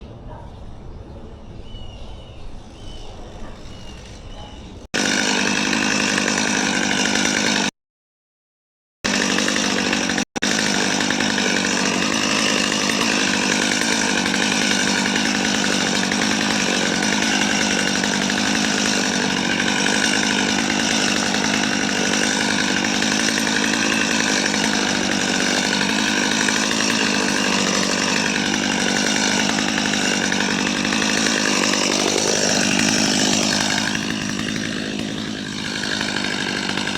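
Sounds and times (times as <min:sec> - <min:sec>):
faint birdsong: 0:00.0 - 0:04.9.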